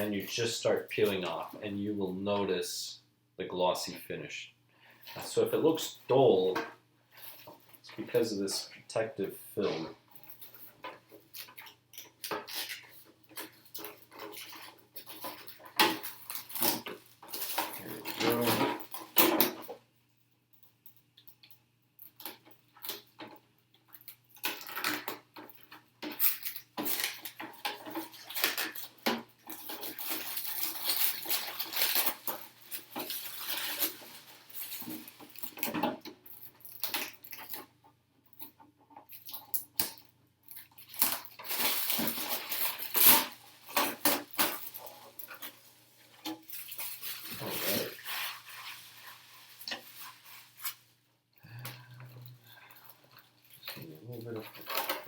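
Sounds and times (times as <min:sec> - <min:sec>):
protective film peeling crackling: 0:10.8 - 0:19.7, 0:23.9 - 0:37.7, 0:39.0 - 0:51.0, 0:51.6 - 0:55.0.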